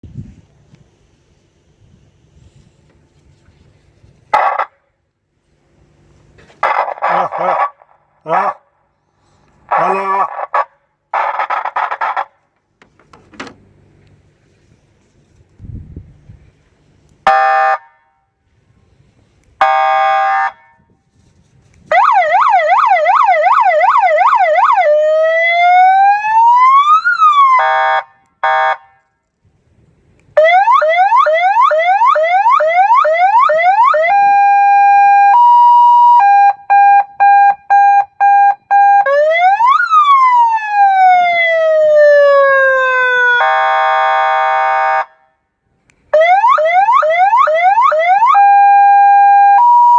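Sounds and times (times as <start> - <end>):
buzzing horn blasts: 17.2 - 18.4, 27.6 - 29.2
electronic siren: 21.9 - 28.8, 30.4 - 45.2, 46.1 - 49.9.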